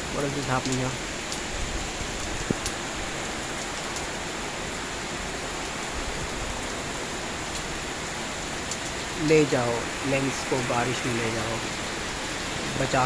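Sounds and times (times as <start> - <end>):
steady rainfall: 0.0 - 13.0.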